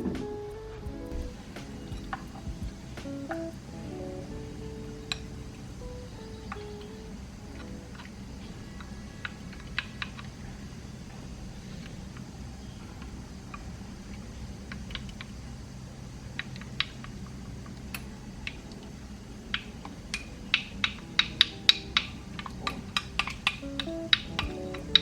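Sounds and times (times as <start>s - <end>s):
low steady hum: 0.0s - 25.0s
sharp clicks and taps: 20.5s - 25.0s.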